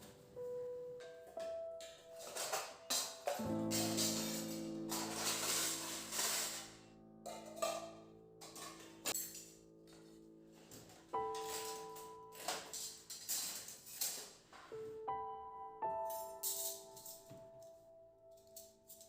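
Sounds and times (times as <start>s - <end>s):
held chord: 3.4s - 7.6s.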